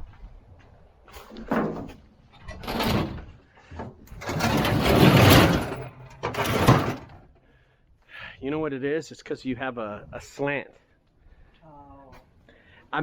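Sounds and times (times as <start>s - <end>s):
refrigerator scraping and knocking: 1.3s - 7.3s.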